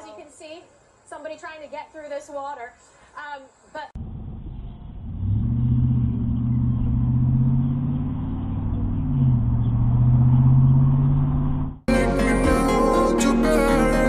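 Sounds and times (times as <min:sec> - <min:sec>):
car engine accelerating: 0:04.0 - 0:11.9.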